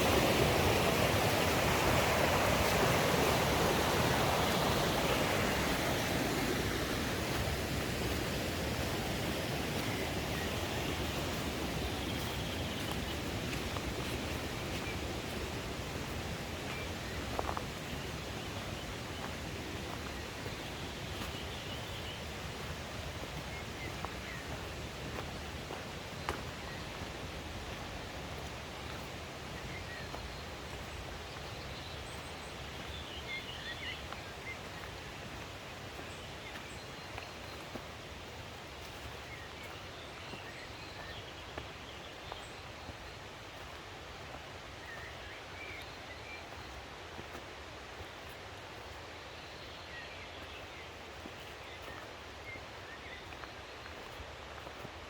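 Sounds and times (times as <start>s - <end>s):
mountain stream rushing: 0.0s - 55.0s.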